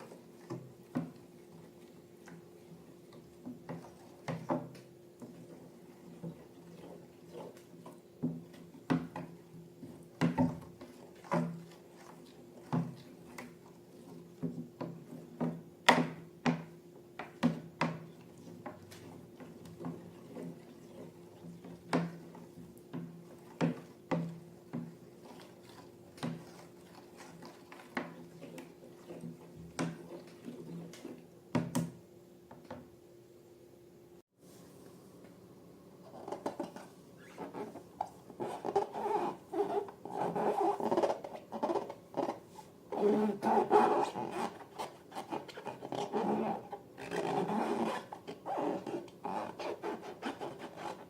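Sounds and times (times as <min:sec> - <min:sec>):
faint steady hum: 0:00.0 - 0:51.0.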